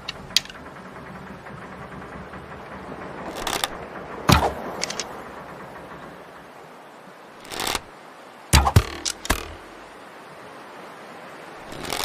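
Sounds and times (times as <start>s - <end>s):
arrow hitting target thwack: 4.3s - 4.6s, 8.6s - 9.6s.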